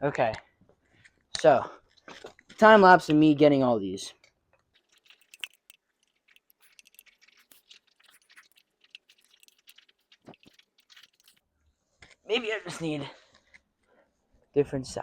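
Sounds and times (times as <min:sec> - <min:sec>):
hand tools clicking and scraping: 0:04.8 - 0:11.5.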